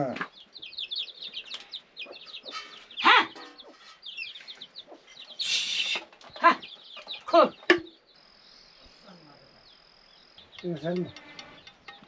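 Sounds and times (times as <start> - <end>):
chickens clucking: 0.0 - 12.0
short hissing burst: 5.4 - 6.0.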